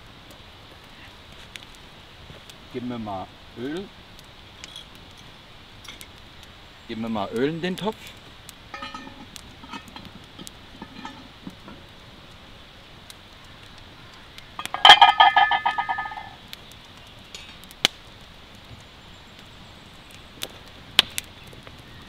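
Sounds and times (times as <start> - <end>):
light clicks of cookware: 8.7 - 11.8
metallic cookware clatter: 8.7 - 11.8.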